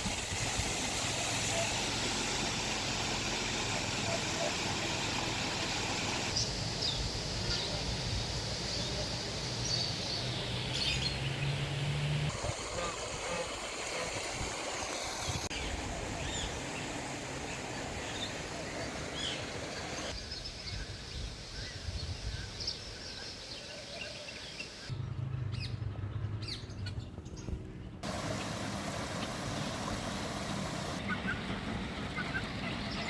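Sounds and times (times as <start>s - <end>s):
steady background hiss: 0.6s - 10.8s, 28.0s - 31.0s.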